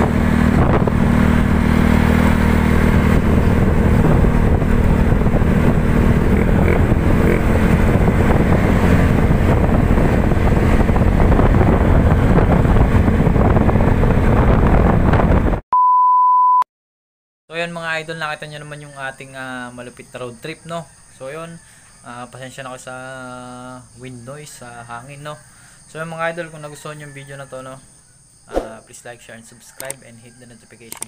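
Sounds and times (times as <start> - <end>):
scooter engine running: 0.0 - 15.0
wind noise on microphone: 0.0 - 15.6.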